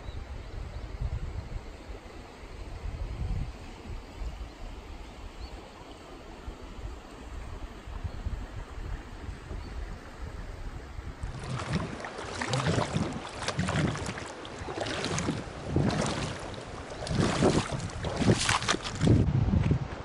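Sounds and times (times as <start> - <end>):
water splashing in a stream: 11.2 - 20.0.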